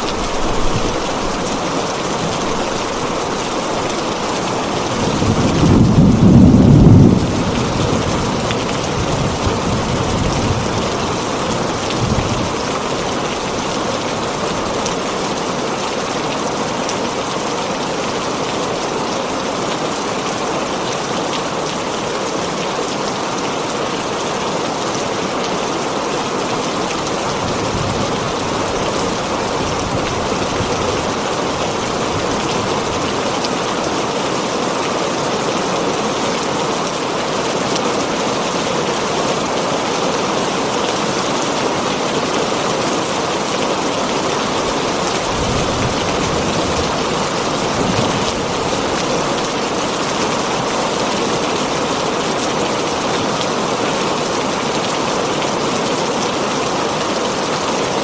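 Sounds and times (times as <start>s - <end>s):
thunder rumbling: 0.0s - 12.6s
rain on a tin roof: 0.0s - 58.0s.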